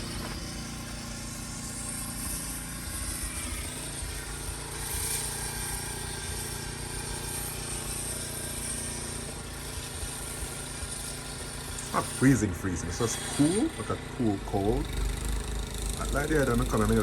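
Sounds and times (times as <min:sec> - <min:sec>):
engine idling: 0:00.0 - 0:17.0.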